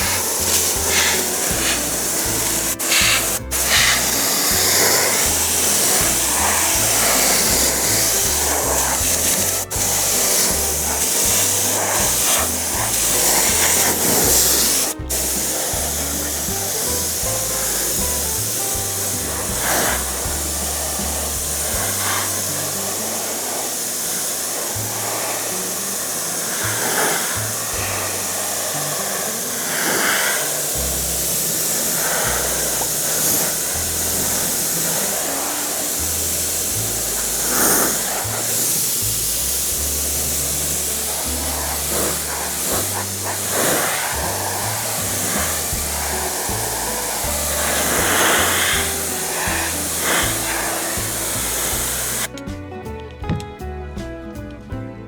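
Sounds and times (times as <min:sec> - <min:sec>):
compressed air spray hissing: 0:00.0 - 0:52.3
background music with bass line: 0:00.0 - 0:55.0.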